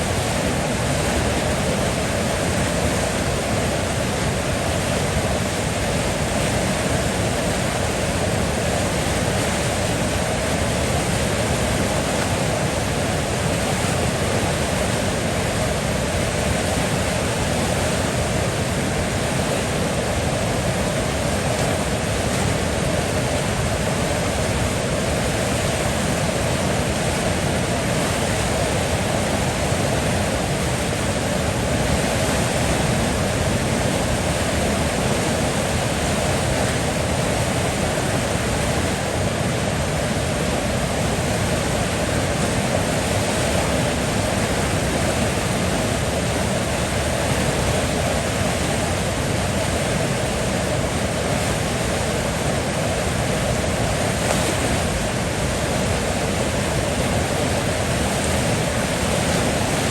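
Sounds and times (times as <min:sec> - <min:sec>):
river water rushing: 0:00.0 - 0:59.9.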